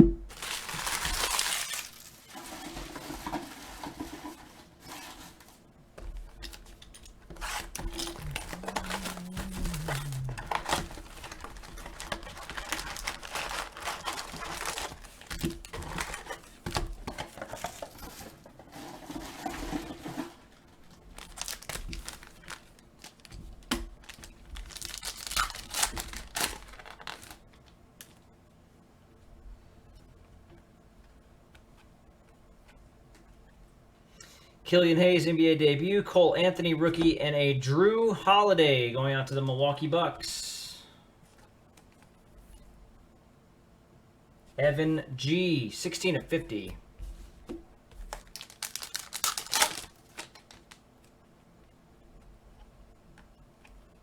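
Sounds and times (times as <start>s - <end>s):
plastic wrapping tearing and crinkling: 0.3s - 2.6s, 7.3s - 18.2s, 20.4s - 27.5s, 48.1s - 50.8s.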